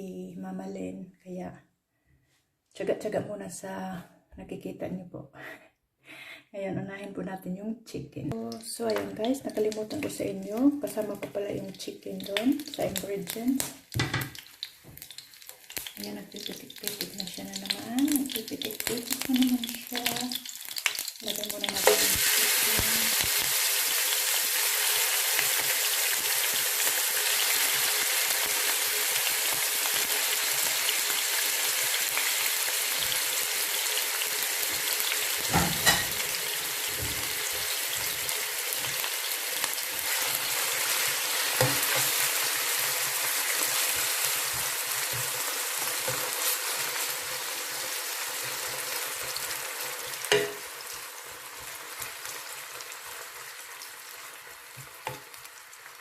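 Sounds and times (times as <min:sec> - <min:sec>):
chicken sizzling in hot oil: 0:08.5 - 0:56.0
knocks against pan: 0:14.0 - 0:14.4, 0:50.3 - 0:50.6.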